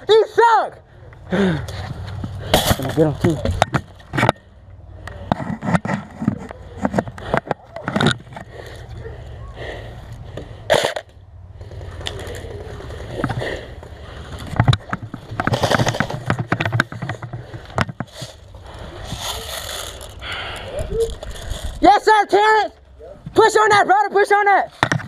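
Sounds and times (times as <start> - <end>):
gear knocks and rustling: 14.2 - 20.2.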